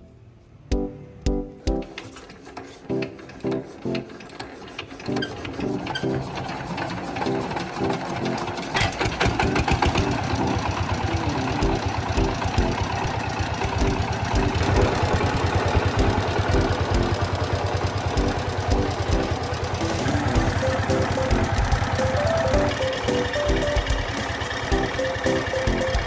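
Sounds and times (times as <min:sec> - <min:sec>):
air compressor pulsing knock: 0:01.7 - 0:26.0.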